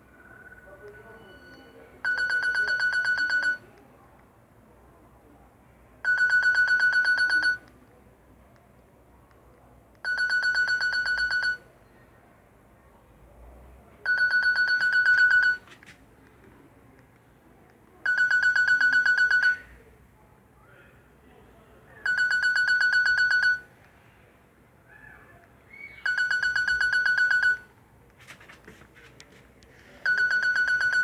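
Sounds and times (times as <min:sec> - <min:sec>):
trilling phone ringtone: 0:00.1 - 0:03.6, 0:06.0 - 0:07.7, 0:10.0 - 0:11.6, 0:14.1 - 0:15.7, 0:18.0 - 0:19.7, 0:22.0 - 0:23.7, 0:26.0 - 0:27.7, 0:30.0 - 0:31.0.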